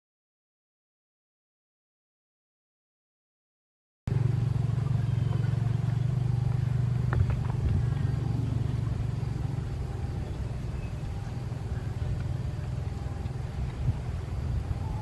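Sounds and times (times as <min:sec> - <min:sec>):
diesel locomotive engine running: 0:04.1 - 0:15.0.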